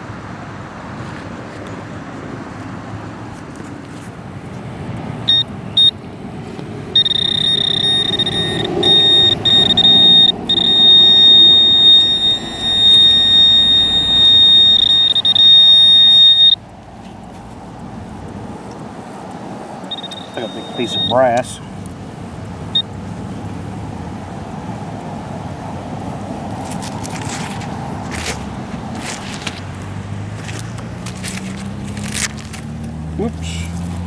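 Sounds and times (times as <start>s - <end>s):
metal detector high-pitched tone: 5.3s - 6.0s, 7.0s - 16.6s, 19.9s - 21.6s.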